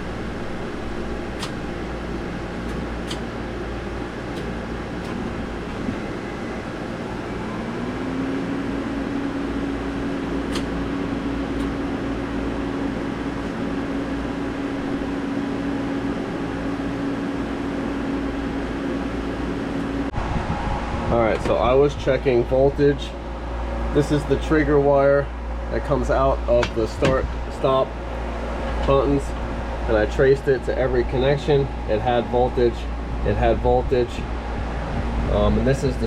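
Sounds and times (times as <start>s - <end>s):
engine-room machinery hum: 0.0s - 36.0s.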